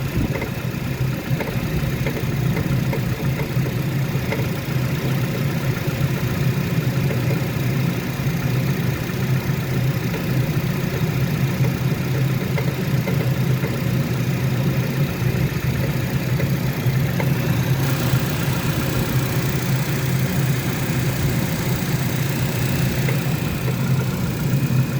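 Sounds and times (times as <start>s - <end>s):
car engine idling: 0.0s - 24.9s.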